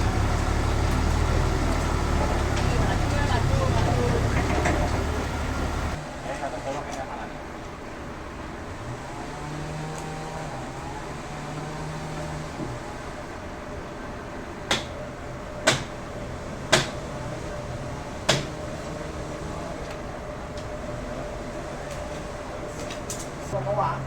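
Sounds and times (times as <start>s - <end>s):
mechanical hum: 0.0s - 6.5s.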